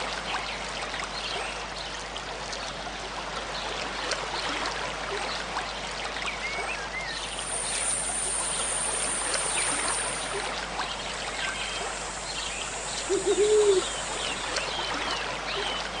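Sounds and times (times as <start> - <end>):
stream running: 0.0 - 16.0
small birds chirping: 7.2 - 10.4, 11.0 - 14.9
bird hooting call: 11.6 - 14.5.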